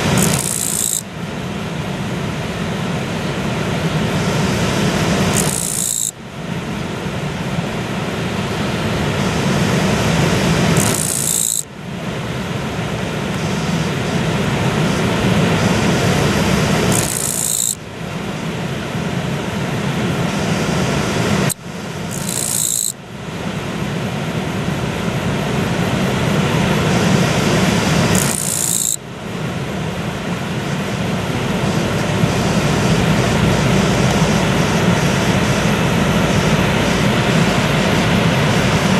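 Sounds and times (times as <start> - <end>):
insect calling in high bursts: 0.0 - 1.2, 4.9 - 6.8, 10.6 - 12.3, 16.7 - 18.4, 21.3 - 23.6, 28.1 - 29.3.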